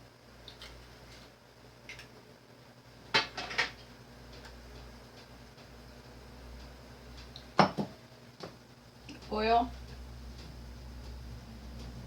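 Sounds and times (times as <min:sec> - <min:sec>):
low steady hum: 0:00.0 - 0:12.0
kitchenware knocks: 0:07.6 - 0:07.9.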